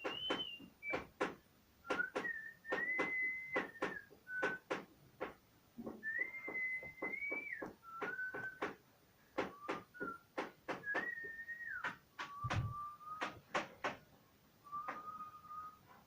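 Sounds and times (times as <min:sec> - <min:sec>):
whistled notes: 0:00.0 - 0:01.1, 0:01.8 - 0:04.7, 0:06.0 - 0:08.7, 0:09.5 - 0:13.5, 0:14.6 - 0:16.0.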